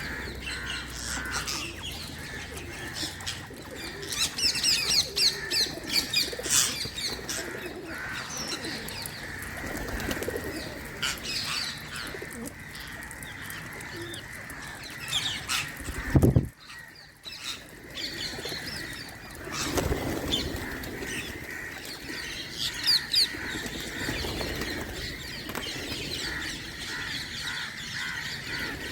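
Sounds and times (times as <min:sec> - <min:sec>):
parakeets chirping: 0:00.0 - 0:09.2.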